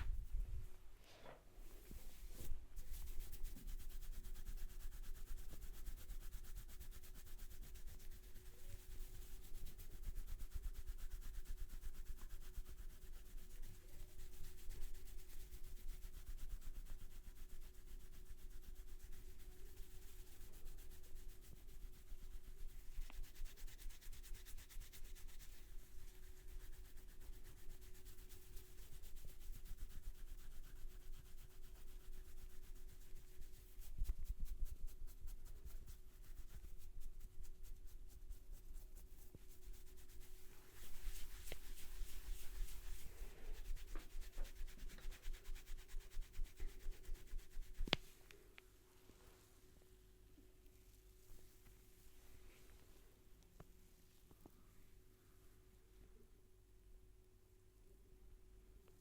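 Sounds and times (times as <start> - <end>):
hands scratching through hair: 1.7 - 48.4.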